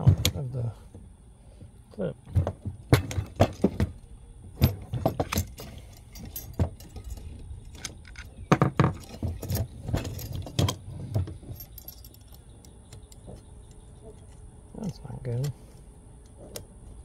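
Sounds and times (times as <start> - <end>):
metal parts clinking: 4.6 - 13.3.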